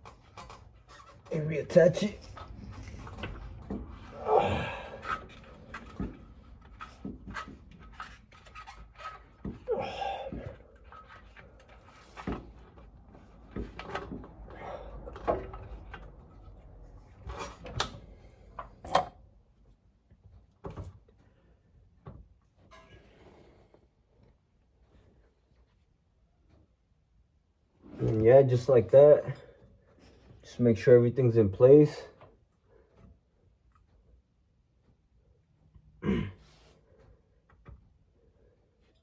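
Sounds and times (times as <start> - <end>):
person straining: 4.1 - 5.6, 9.6 - 10.7, 36.0 - 36.4.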